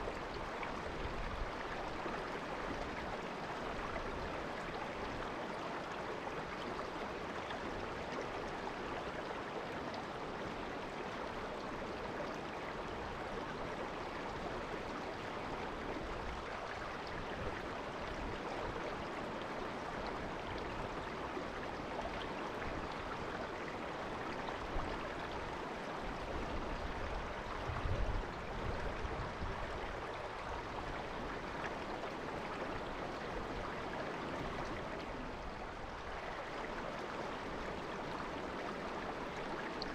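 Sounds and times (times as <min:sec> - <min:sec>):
shallow river babbling: 0:00.0 - 0:39.9.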